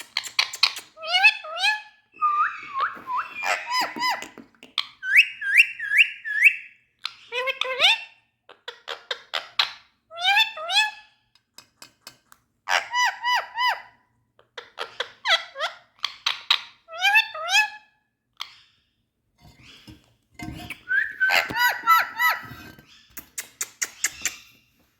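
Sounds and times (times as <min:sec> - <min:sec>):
parrot chirping: 0:00.0 - 0:11.0, 0:19.6 - 0:24.6.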